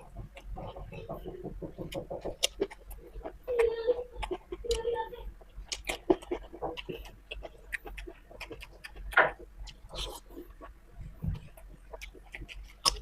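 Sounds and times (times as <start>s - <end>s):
wet chewing: 0.0s - 13.0s
person humming: 3.5s - 5.3s
lip smacks: 5.6s - 13.0s.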